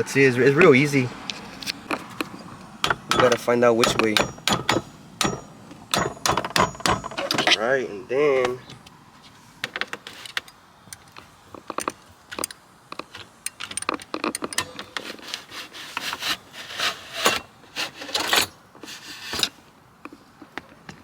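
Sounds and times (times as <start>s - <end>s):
hand tools clicking and tapping: 1.3s - 7.6s, 9.6s - 20.6s
plastic rubbing scrapes: 14.9s - 19.6s.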